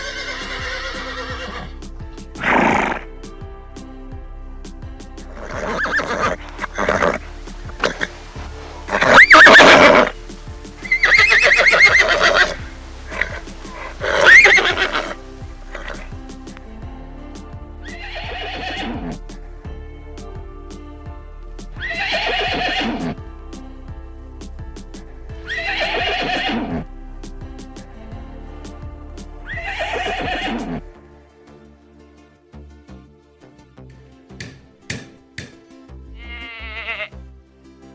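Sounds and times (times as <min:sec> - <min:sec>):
horse whinnying: 0:00.0 - 0:01.7, 0:02.4 - 0:03.0, 0:05.3 - 0:10.2, 0:10.8 - 0:16.2, 0:17.9 - 0:19.2, 0:21.8 - 0:23.2, 0:25.5 - 0:26.9, 0:29.6 - 0:30.8
background music: 0:00.0 - 0:37.9.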